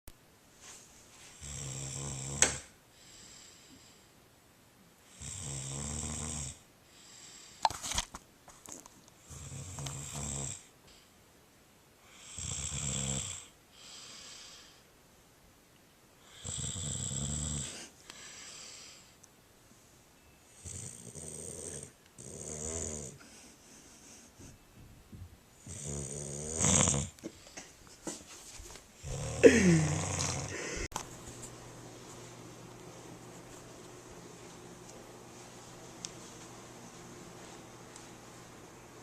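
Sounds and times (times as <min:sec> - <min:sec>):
person snoring: 0:01.4 - 0:03.6, 0:05.1 - 0:06.6, 0:09.3 - 0:10.7, 0:12.1 - 0:14.8, 0:16.2 - 0:19.0, 0:20.6 - 0:23.4, 0:25.6 - 0:27.2, 0:29.0 - 0:30.9.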